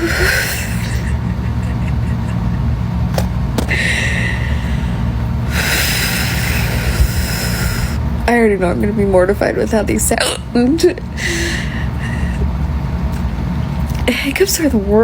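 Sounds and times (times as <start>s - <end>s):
woman hiccuping: 0.0s - 1.6s, 10.2s - 10.5s
steady low rumble: 0.0s - 15.0s.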